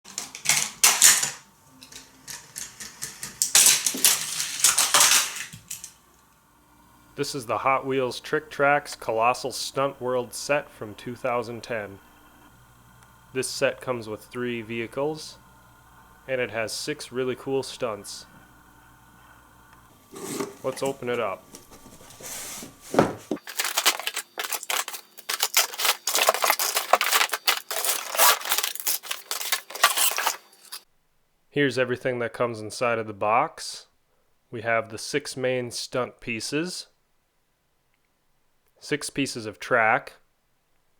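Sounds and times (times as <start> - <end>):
packaging crinkling and rustling: 0.1 - 1.3, 1.9 - 5.9, 20.1 - 30.8
small hard objects clattering: 0.1 - 6.0, 20.1 - 30.8.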